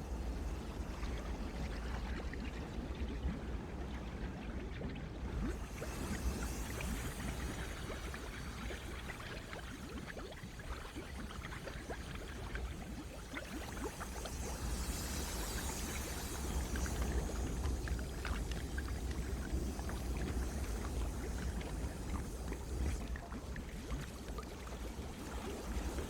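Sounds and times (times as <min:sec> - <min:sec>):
steam hiss: 0:05.5 - 0:08.6, 0:13.8 - 0:23.0.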